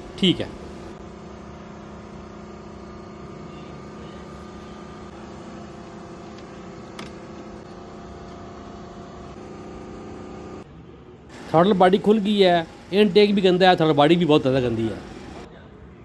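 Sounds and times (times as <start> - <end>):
engine idling: 0.0 - 1.0, 11.3 - 15.5.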